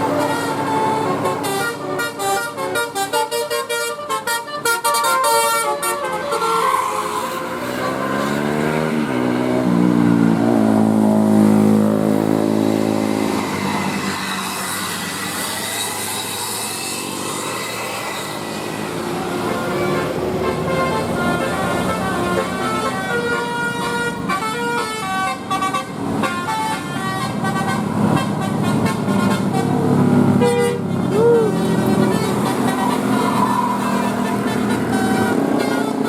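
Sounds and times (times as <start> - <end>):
bus multi-tone horn melody: 0.0 - 36.0
road traffic noise: 0.0 - 36.0.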